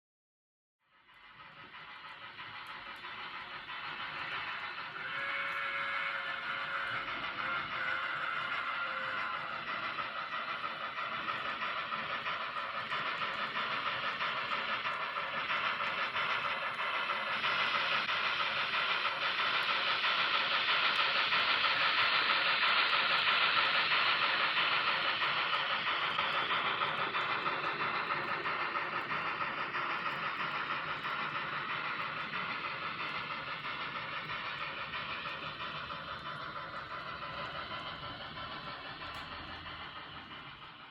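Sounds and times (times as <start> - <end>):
model train rolling on track: 0.9 - 40.9.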